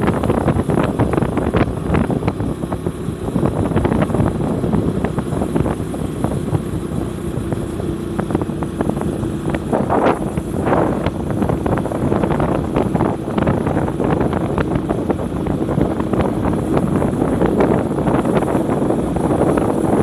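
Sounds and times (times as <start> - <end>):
vehicle road noise: 0.0 - 20.0
wind buffeting microphone: 0.0 - 20.0.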